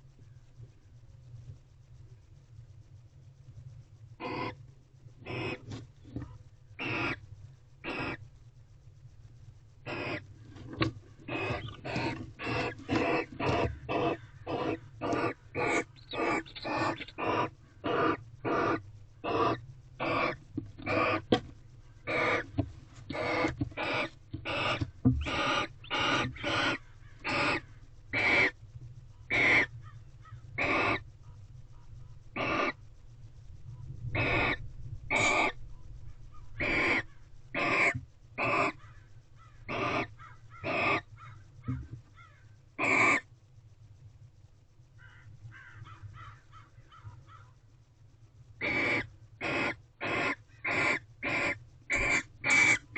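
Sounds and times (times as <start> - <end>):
bird giving harsh calls: 4.2 - 4.6, 5.3 - 5.6, 6.8 - 7.2, 7.8 - 8.2, 9.9 - 10.2, 11.3 - 21.3, 22.1 - 22.5, 23.1 - 28.5, 29.3 - 31.0, 32.4 - 32.8, 34.2 - 35.6, 36.4 - 41.4, 48.6 - 52.9.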